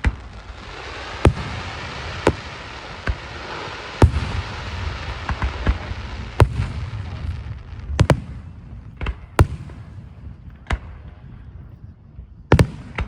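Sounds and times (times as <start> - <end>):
fireworks bangs: 0.0 - 11.5, 12.5 - 13.0.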